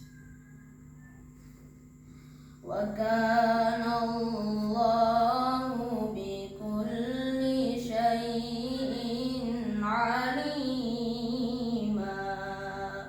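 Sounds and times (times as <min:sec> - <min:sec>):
person reciting melodically: 0:02.6 - 0:13.0.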